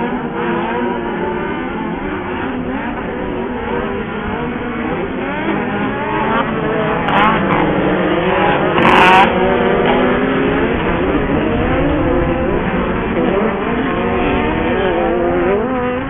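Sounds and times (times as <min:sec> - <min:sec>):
racing buggy engines revving: 0:00.0 - 0:16.0.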